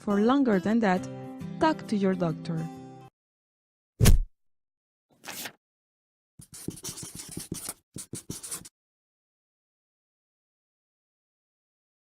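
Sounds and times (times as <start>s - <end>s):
brief swish: 4.0s - 4.3s
loud thud: 4.0s - 4.3s.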